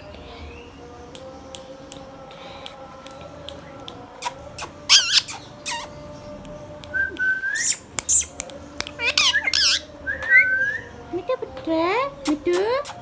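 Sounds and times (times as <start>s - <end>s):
parakeet rising whistle: 4.2s - 5.9s, 7.3s - 8.4s, 9.0s - 10.9s
parakeet screeching: 4.2s - 6.1s, 7.6s - 8.4s, 9.0s - 10.9s.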